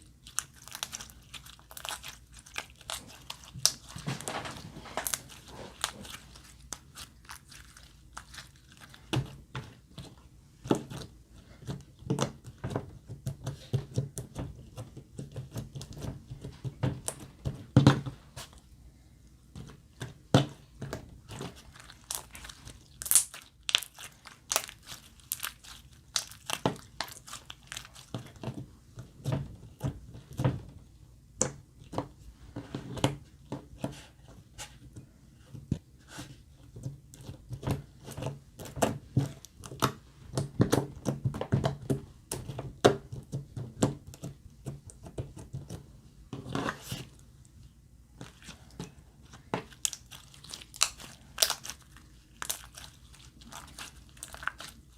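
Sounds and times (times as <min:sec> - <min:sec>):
slime squished by hand: 0:00.0 - 0:11.1, 0:21.2 - 0:28.6, 0:48.2 - 0:54.9.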